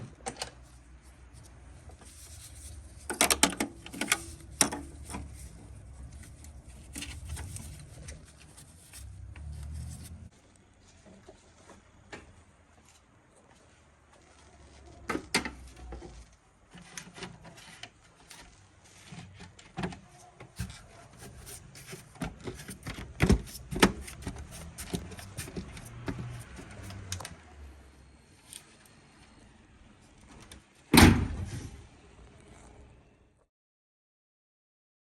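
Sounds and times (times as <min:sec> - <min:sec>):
clicks and knocks of hand work: 0:19.1 - 0:27.4.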